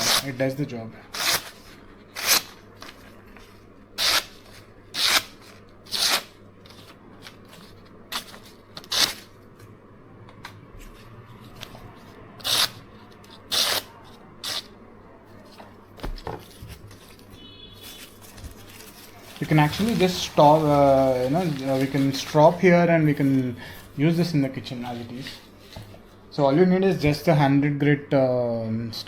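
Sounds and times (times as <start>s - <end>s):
knife slicing through paper: 17.9s - 22.6s.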